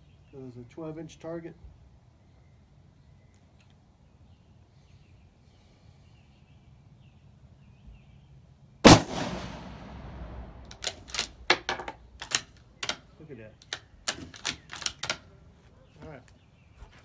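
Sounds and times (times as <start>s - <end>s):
rifle shot with echo: 8.8s - 10.8s.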